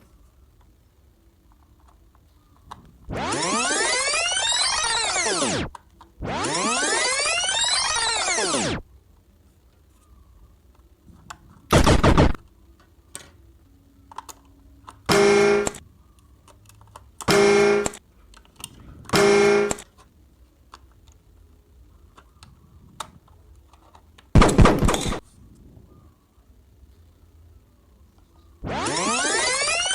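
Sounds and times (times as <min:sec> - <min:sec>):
electronic pitched tones: 0:03.1 - 0:08.8, 0:11.7 - 0:12.4, 0:15.1 - 0:15.8, 0:17.3 - 0:18.0, 0:19.1 - 0:19.8, 0:24.4 - 0:25.2, 0:28.6 - 0:29.9
noisy electronic burst: 0:03.1 - 0:08.8, 0:11.7 - 0:12.4, 0:15.1 - 0:15.8, 0:17.3 - 0:18.0, 0:19.1 - 0:19.8, 0:24.4 - 0:25.2, 0:28.6 - 0:29.9.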